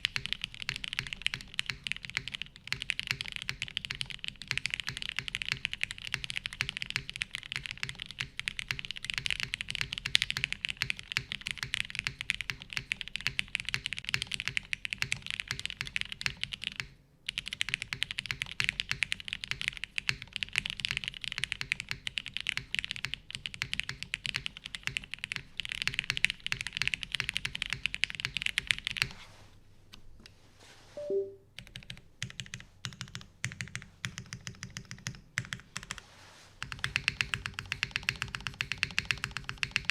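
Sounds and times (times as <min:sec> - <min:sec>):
mechanical keyboard typing: 0:00.0 - 0:29.1, 0:31.0 - 0:36.0, 0:36.6 - 0:39.9.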